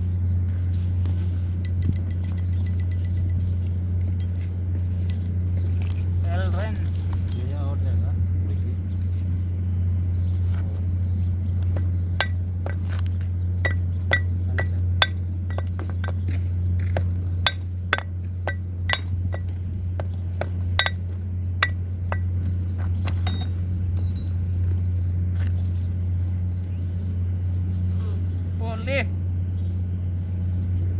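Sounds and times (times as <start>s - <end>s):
steady low hum: 0.0s - 30.9s
metallic clinks of tools: 1.6s - 4.4s, 20.8s - 22.3s, 23.2s - 24.4s.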